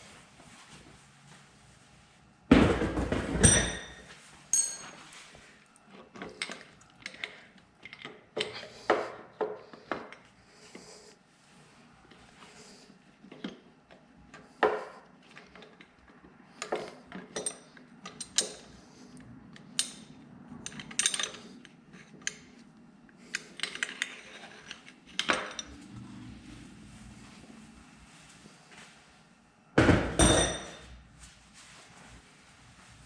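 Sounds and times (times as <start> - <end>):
metal tools clanking: 3.4 - 5.0.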